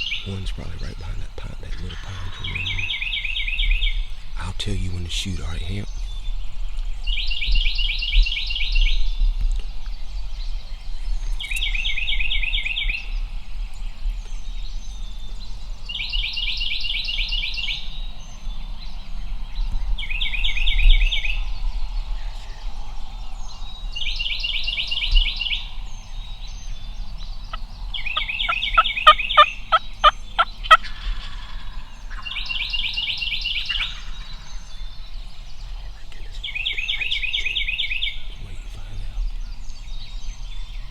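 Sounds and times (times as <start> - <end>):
songbird trilling: 0.0 - 9.2, 10.3 - 13.2, 13.8 - 40.9
turkey yelping: 28.1 - 32.4.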